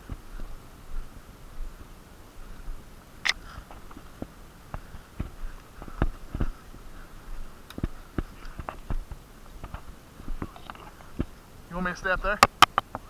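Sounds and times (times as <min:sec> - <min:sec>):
footsteps and gear knocks: 0:03.5 - 0:11.4.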